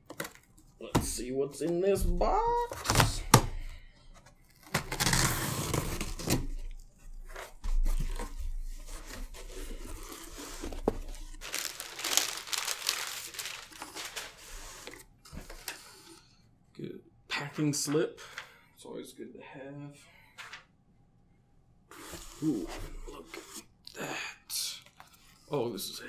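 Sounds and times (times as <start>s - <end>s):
packaging crinkling and tearing: 0.0s - 1.2s, 2.6s - 3.7s, 4.4s - 15.8s.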